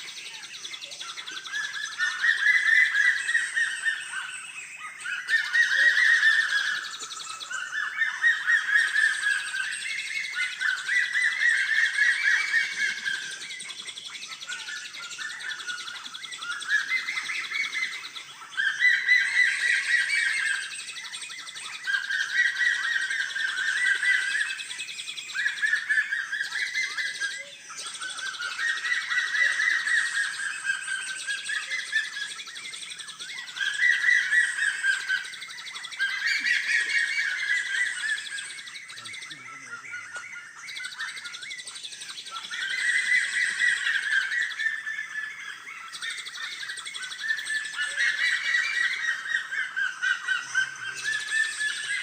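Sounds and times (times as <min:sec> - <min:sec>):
bird chattering calls: 0:25.3 - 0:52.0.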